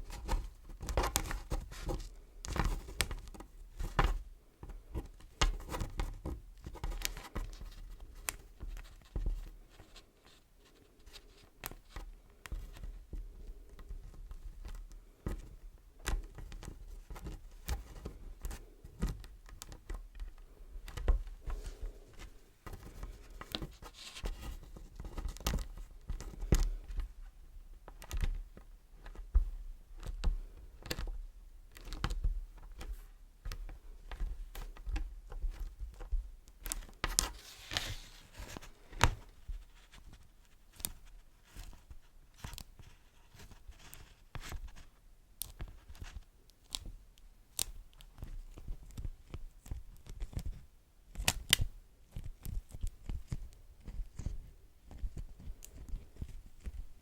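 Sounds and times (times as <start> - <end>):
crackly crinkles: 30.0 - 57.0.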